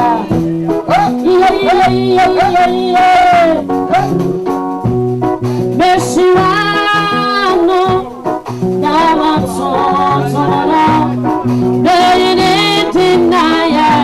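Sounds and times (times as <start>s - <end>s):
person singing gospel song: 0.0s - 4.2s, 5.6s - 14.0s
band with bass and keyboard: 0.0s - 14.0s.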